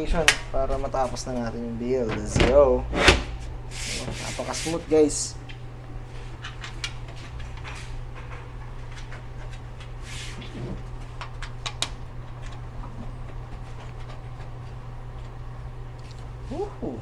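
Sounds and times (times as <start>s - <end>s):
steady low hum: 0.0s - 17.0s
scrapes of computer case: 2.2s - 4.8s.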